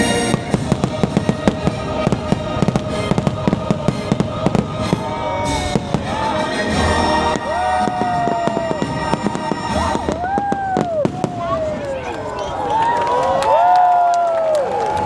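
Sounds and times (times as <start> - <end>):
orchestral music: 0.0 - 10.4
fireworks whistling: 0.0 - 11.7
fireworks crackling and popping: 0.0 - 12.5.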